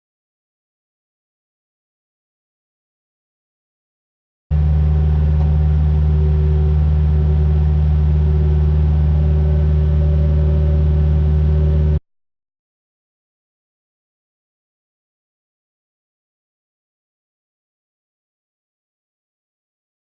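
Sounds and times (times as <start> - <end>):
excavator diesel engine running: 4.5 - 12.0.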